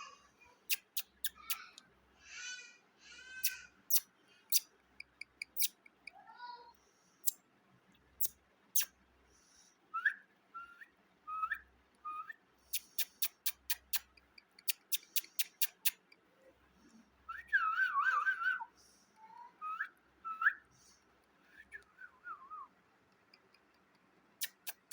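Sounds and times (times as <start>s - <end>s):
parrot whistling and chirping: 10.0s - 16.0s, 17.3s - 18.7s, 19.6s - 20.7s, 24.4s - 24.9s.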